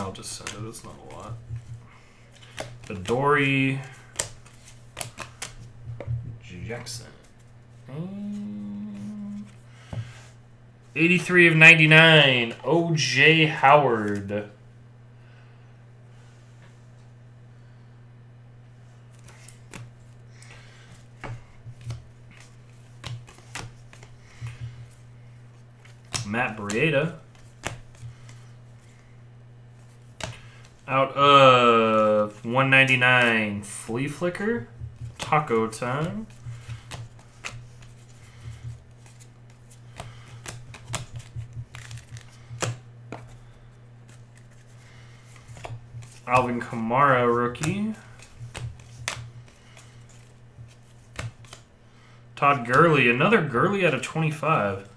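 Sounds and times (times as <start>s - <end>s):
cards flicking and snapping: 0.0s - 5.7s, 19.1s - 25.0s, 25.8s - 29.1s, 29.8s - 30.8s, 34.0s - 51.7s
low hum: 0.0s - 11.4s
steady low hum: 0.0s - 54.9s.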